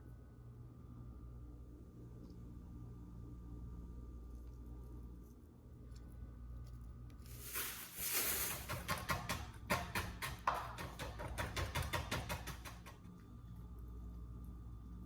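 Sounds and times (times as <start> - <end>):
cooking hiss: 7.2 - 8.8.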